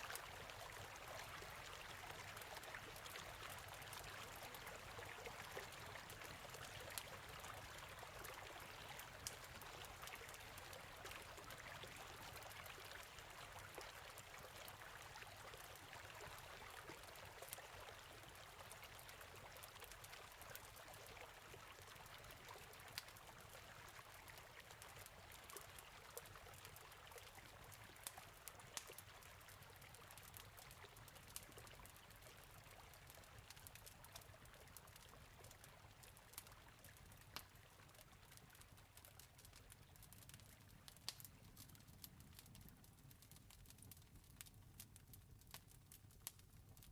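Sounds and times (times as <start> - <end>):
campfire crackling and popping: 0.0 - 46.9
trickle of running water: 0.0 - 46.9.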